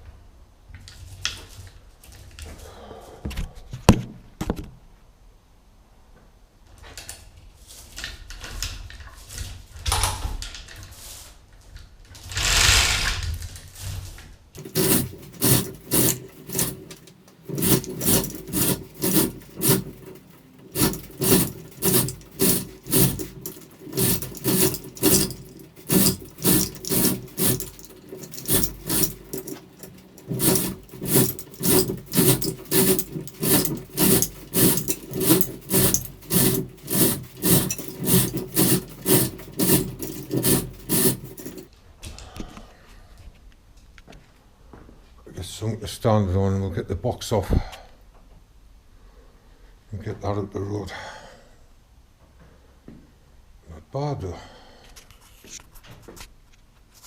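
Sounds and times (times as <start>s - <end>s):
repeated rasping strokes: 14.6s - 41.7s.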